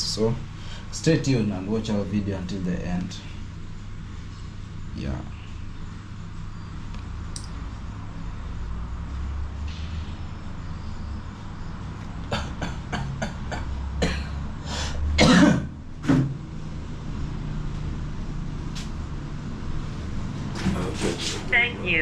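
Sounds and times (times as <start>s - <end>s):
steady low hum: 0.0s - 22.0s
person coughing: 12.3s - 14.4s, 15.2s - 15.7s.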